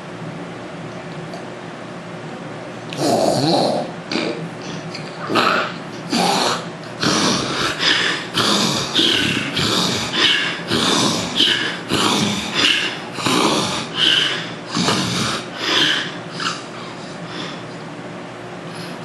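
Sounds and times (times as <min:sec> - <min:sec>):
man snoring and snorting: 0:02.9 - 0:16.7.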